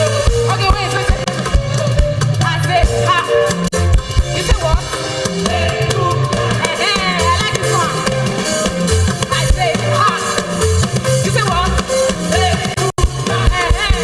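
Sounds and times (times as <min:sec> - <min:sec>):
bass guitar: 0:00.0 - 0:14.0
drum kit: 0:00.0 - 0:14.0
people singing gospel: 0:04.4 - 0:10.6, 0:11.3 - 0:14.0.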